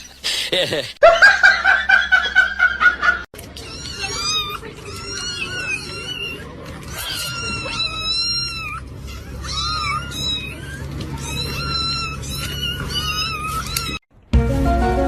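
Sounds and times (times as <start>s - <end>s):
cat meowing: 3.6s - 14.0s.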